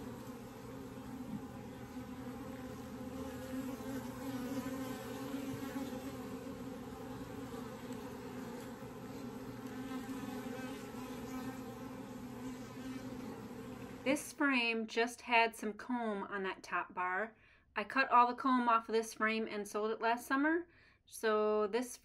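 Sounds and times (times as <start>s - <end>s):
bees buzzing: 0.0s - 14.2s.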